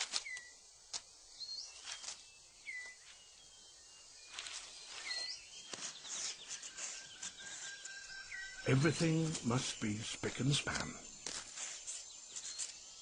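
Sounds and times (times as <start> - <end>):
birds whistling: 0.2 - 0.6, 1.4 - 13.0
faint rustles and clicks: 1.7 - 3.2, 4.2 - 8.2, 10.6 - 13.0.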